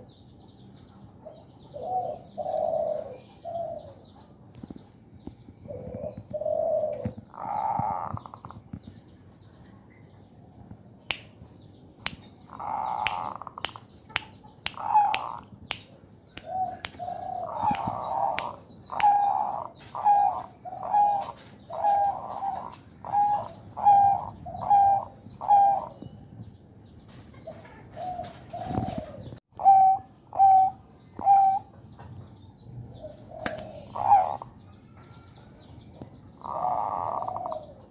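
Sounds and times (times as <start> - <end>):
dove cooing: 1.2 - 4.1, 5.6 - 8.6, 12.5 - 13.5, 14.8 - 15.4, 16.4 - 26.0, 27.5 - 31.7, 33.0 - 34.6, 36.4 - 37.9
harsh grating bird calls: 5.7 - 8.8, 12.1 - 26.2, 27.4 - 31.7, 33.0 - 34.6, 36.3 - 37.9
finger clicks: 11.1 - 11.3, 12.0 - 12.2, 13.0 - 17.0, 17.6 - 19.3, 33.4 - 33.7.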